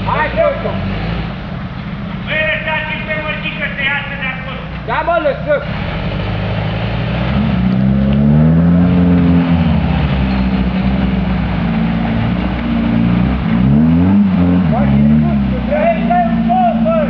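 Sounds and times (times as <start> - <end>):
engine revving hard: 0.0 - 1.6, 5.2 - 17.0.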